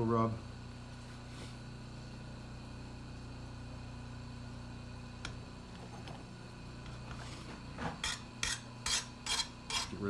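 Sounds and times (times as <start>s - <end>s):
metal scraping along blade: 8.0s - 10.0s.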